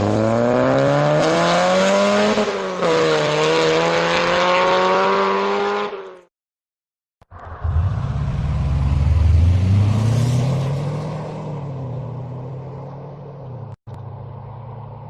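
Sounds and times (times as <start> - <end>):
car engine accelerating hard: 7.5 - 13.7.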